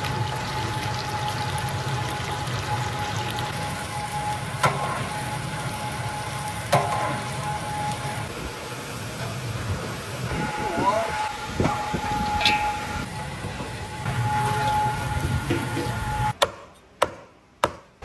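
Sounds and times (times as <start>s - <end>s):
metallic clanks of cookware: 6.7s - 7.3s, 12.3s - 12.9s.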